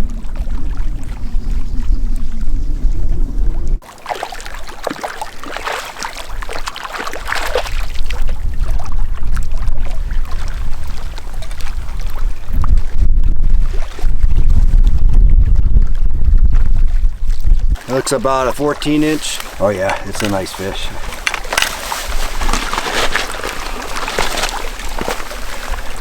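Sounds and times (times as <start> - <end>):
wind rumbling on microphone: 0.0 - 3.8, 7.3 - 17.9
water splashing and sloshing: 0.0 - 26.0.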